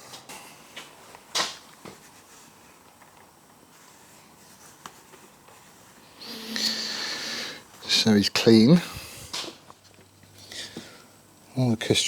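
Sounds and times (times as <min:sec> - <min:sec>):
cloth rag rubbing metal part: 0:03.7 - 0:08.2.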